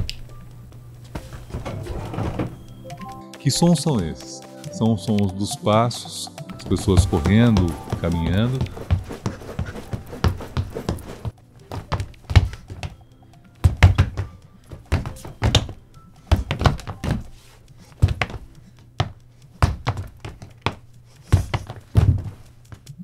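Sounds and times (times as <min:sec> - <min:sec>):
faint music: 0:00.0 - 0:23.0
footsteps on hard floor: 0:01.0 - 0:02.8, 0:06.5 - 0:13.0, 0:13.6 - 0:22.8.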